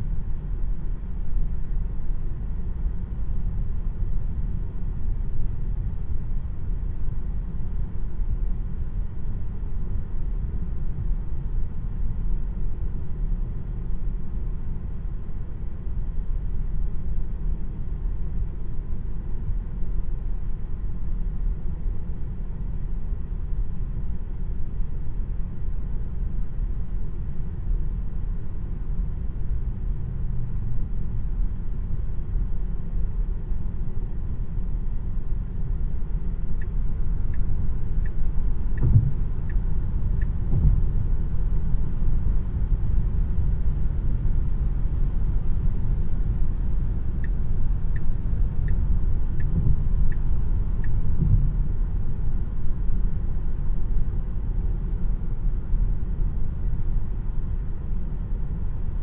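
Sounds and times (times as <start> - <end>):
light ticks: 36.6 - 39.6, 47.2 - 51.5
dull road bumps: 37.0 - 53.3.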